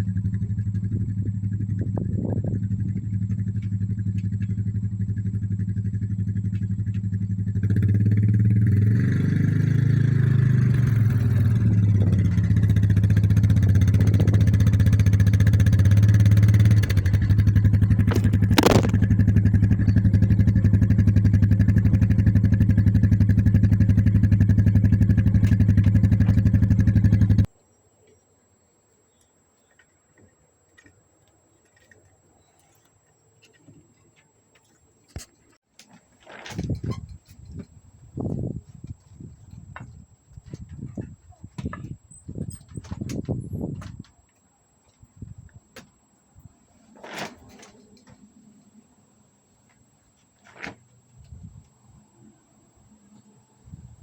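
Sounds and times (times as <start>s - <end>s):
engine humming: 0.0s - 27.5s.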